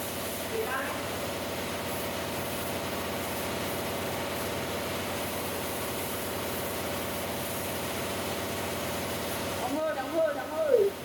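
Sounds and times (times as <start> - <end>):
air compressor hum: 0.0 - 11.0.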